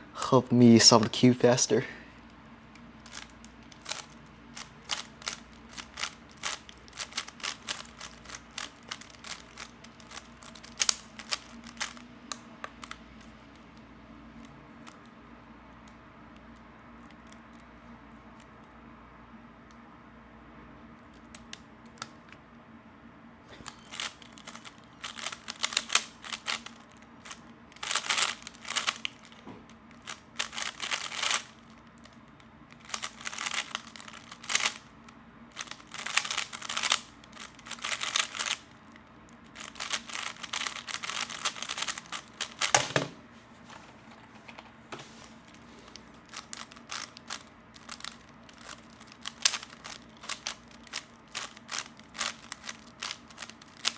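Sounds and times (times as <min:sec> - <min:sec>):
puzzle cube plastic clicking: 0:02.7 - 0:13.6, 0:23.6 - 0:34.9, 0:35.6 - 0:43.1, 0:45.5 - 0:53.9.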